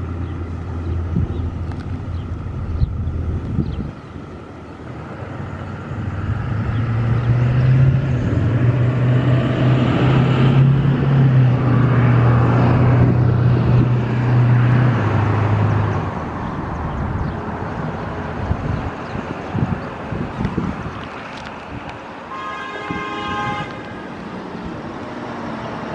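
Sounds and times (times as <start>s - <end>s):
vehicle engine hum passing by: 0.0s - 25.9s.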